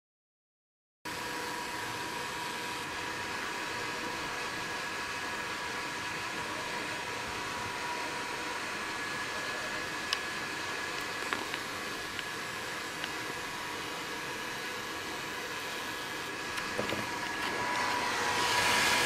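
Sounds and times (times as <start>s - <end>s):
computer cooling fan whooshing: 7.2s - 19.0s.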